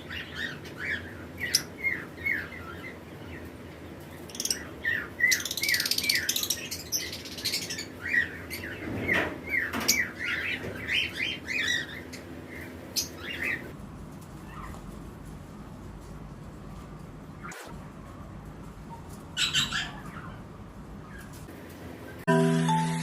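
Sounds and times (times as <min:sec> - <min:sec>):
lovebirds chirping: 0:00.0 - 0:13.7, 0:18.9 - 0:21.4.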